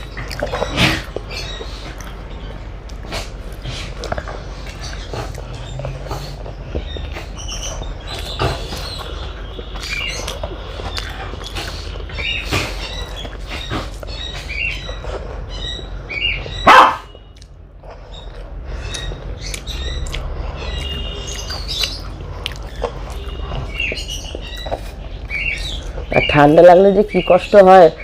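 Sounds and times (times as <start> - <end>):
chewing clicks: 0.0 - 13.8, 17.3 - 25.8
birds chirping: 0.0 - 28.0
dog bark: 16.6 - 17.2.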